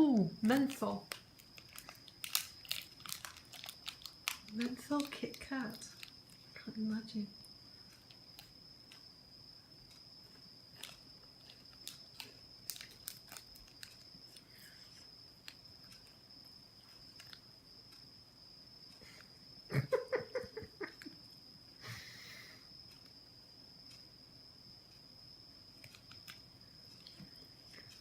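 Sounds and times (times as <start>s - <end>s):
wrapper rustle: 0.4s - 6.5s, 10.8s - 14.4s
crunching wafer: 0.4s - 6.6s, 10.7s - 16.2s.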